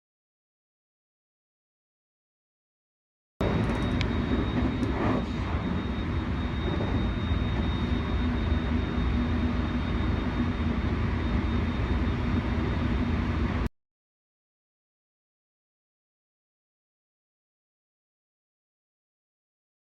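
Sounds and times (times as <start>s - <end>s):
electric train rumbling: 3.4s - 13.7s
high whine: 3.4s - 13.7s.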